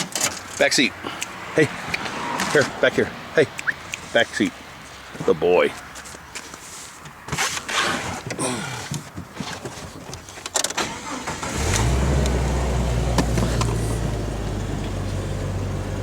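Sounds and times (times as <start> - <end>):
knocks and rustles: 5.1 - 10.8
car engine starting and idling: 10.6 - 16.0.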